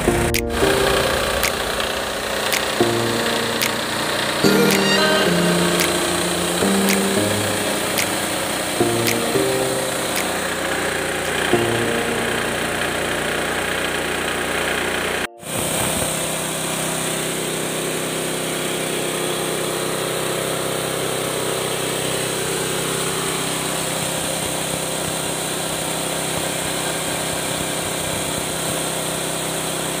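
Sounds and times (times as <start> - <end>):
rice polishing machine humming: 9.8 - 30.0.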